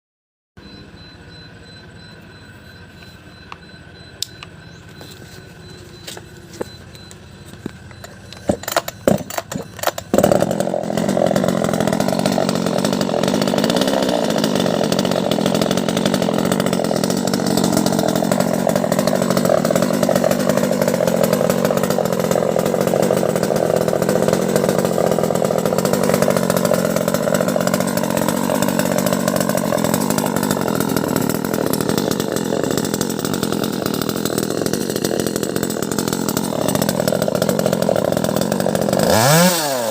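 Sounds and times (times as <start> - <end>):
chainsaw engine running: 0.6 - 39.9
sharp clicks and knocks: 6.0 - 10.3.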